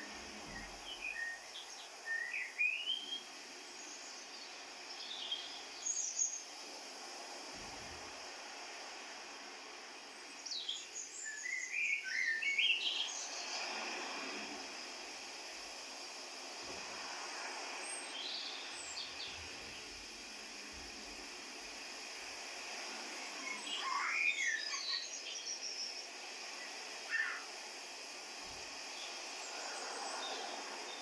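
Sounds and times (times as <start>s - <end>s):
steady outdoor hiss: 0.0s - 31.0s
songbirds chirping: 0.2s - 6.6s, 9.8s - 13.6s, 17.8s - 20.1s.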